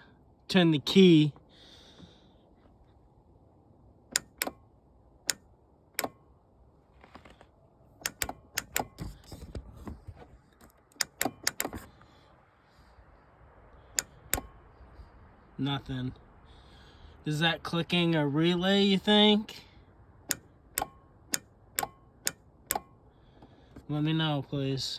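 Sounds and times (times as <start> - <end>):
sharp starter clicks: 4.1 - 4.7, 8.0 - 9.3, 10.9 - 11.9, 14.0 - 14.7.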